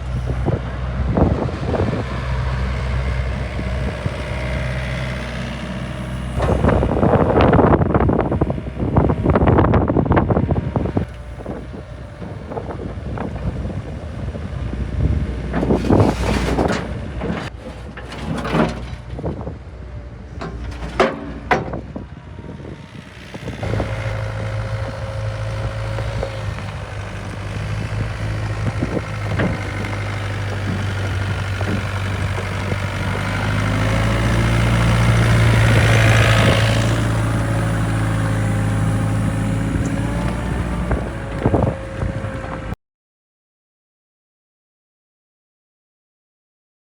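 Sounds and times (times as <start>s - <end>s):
excavator diesel engine: 0.0s - 42.8s
knocks and clatters: 15.5s - 19.3s, 20.3s - 22.0s.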